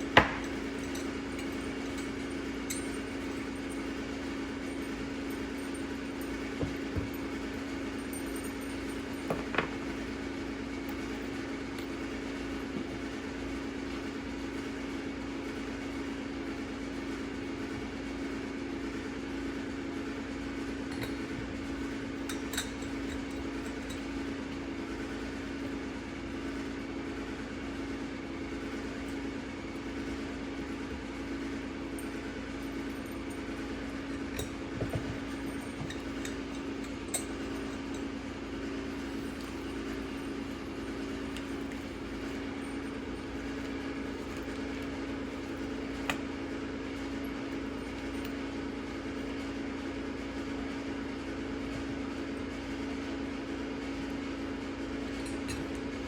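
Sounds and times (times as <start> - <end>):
faint clicks and clinks: 0.0 - 7.3, 20.9 - 21.4, 32.0 - 38.2
steady mechanical hum: 0.0 - 56.0.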